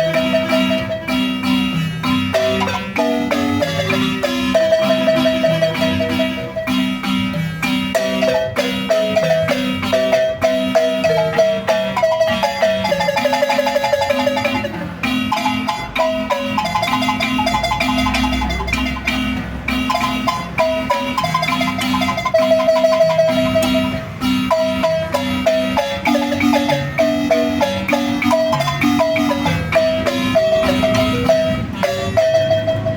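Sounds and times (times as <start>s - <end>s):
marimba playing lively tune: 0.0s - 32.9s.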